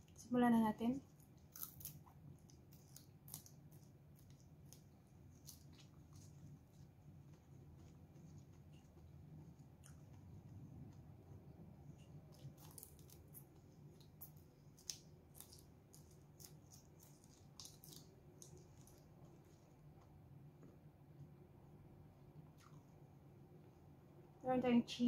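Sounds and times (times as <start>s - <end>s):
low steady hum: 0.0s - 25.0s
chewing leafy greens: 1.0s - 20.2s.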